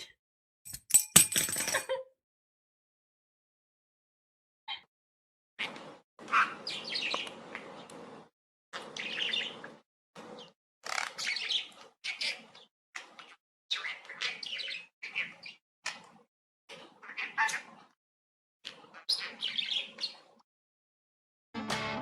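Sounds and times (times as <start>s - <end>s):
birds chirping: 5.6s - 8.1s, 8.8s - 9.7s, 10.3s - 12.7s, 13.7s - 15.6s, 18.9s - 20.3s.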